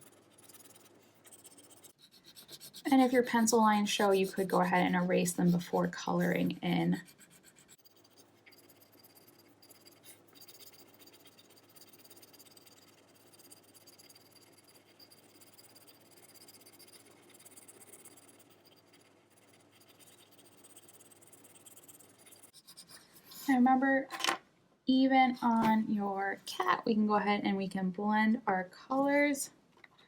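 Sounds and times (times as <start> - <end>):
crayon scratching on paper: 0.0 - 23.6.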